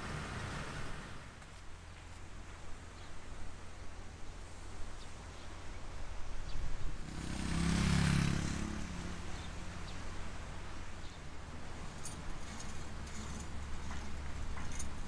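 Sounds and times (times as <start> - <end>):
motor vehicle passing by: 6.9 - 10.9.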